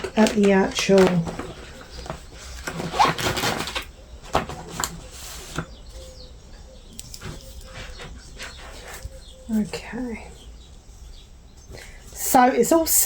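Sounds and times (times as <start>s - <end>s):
fabric rustling and crinkling: 0.0s - 6.2s.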